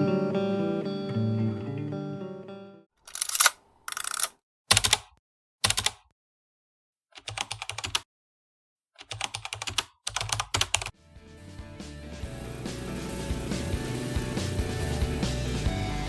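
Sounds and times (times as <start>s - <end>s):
music: 0.0s - 2.9s, 11.0s - 16.0s
computer keyboard typing: 3.1s - 6.0s, 7.2s - 8.0s, 9.0s - 10.9s.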